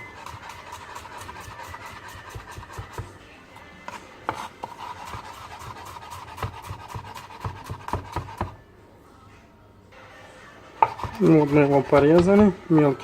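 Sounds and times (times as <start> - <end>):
knife chopping on cutting board: 0.2 - 3.1, 3.9 - 8.6, 10.8 - 12.6.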